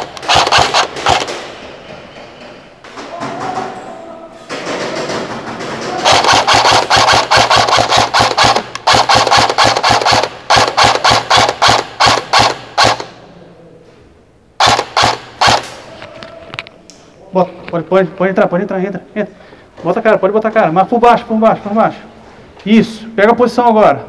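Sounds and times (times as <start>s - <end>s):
airsoft guns firing: 0.0s - 1.7s, 4.5s - 13.2s, 14.6s - 15.9s.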